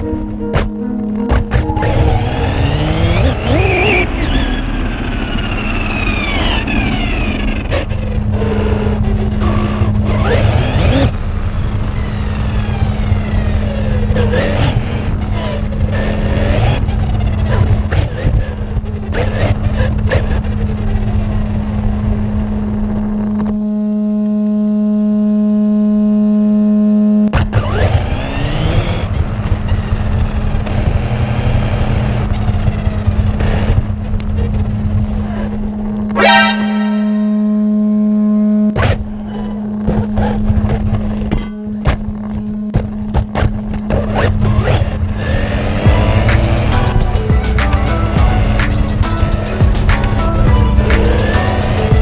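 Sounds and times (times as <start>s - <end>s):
held horn-like tone: 36.2s - 37.6s, 45.8s - 49.6s.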